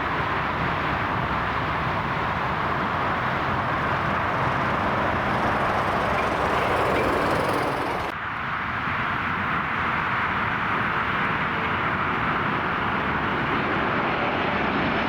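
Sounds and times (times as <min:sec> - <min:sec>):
jet engine rushing: 0:00.1 - 0:08.1.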